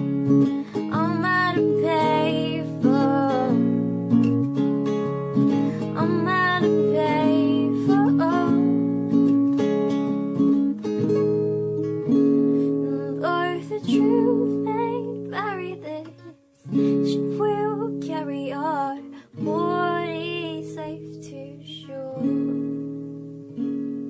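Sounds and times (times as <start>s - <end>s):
acoustic guitar strumming chords: 0.0s - 24.0s
woman singing wordless melody: 0.6s - 4.2s, 5.6s - 9.1s, 12.7s - 23.0s.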